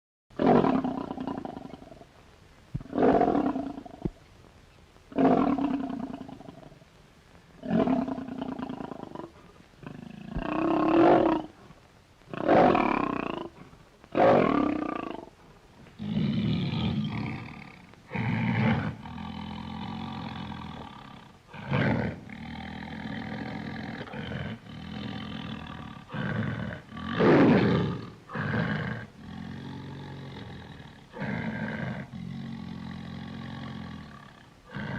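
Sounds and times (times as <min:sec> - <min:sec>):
bear roaring: 0:12.3 - 0:15.3, 0:16.0 - 0:34.9
bear growling: 0:12.3 - 0:15.4, 0:16.0 - 0:34.9.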